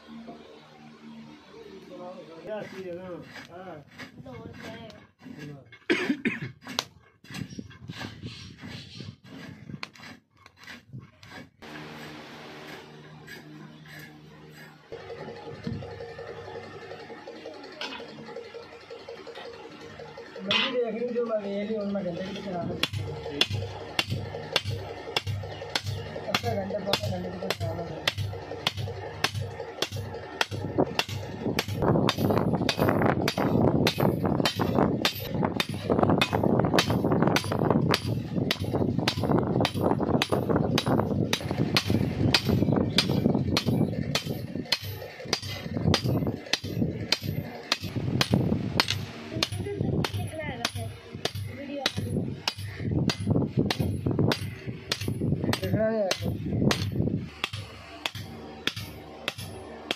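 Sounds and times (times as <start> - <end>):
hammer striking steel blade: 22.8 - 59.9.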